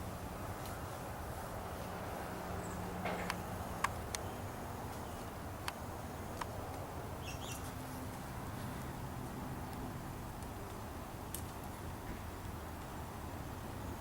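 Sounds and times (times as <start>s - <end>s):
birds chirping faintly: 2.5s - 9.1s.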